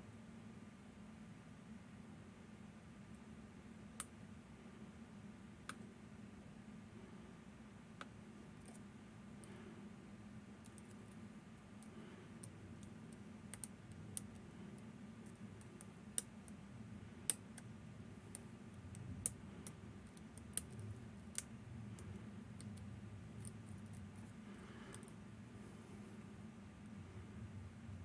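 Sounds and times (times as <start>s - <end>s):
faint low hum: 0.0s - 28.0s.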